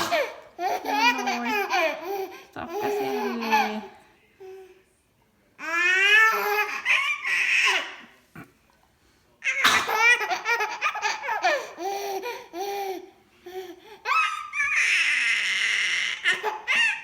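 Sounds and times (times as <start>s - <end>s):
baby belly-laughing: 0.0s - 3.8s.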